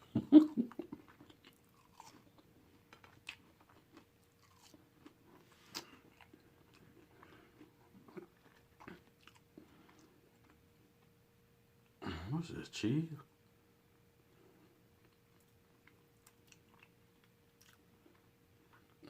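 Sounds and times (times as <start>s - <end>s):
person chewing food: 0.3s - 11.1s, 14.6s - 19.0s.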